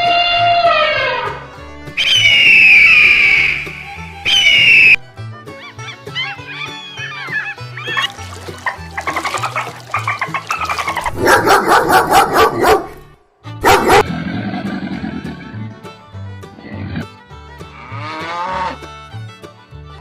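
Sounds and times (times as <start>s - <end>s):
background music: 0.0s - 20.0s
dog barking: 11.1s - 14.1s.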